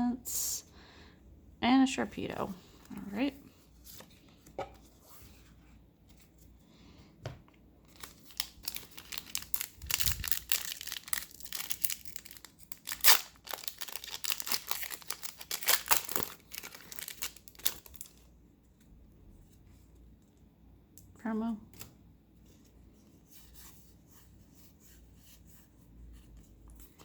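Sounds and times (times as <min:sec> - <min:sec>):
foil wrapper tearing and crinkling: 0:07.9 - 0:18.3.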